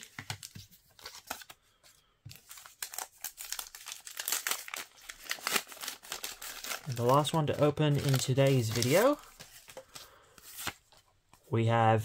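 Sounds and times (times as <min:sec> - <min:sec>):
plastic wrapper crinkling: 0:02.3 - 0:11.0.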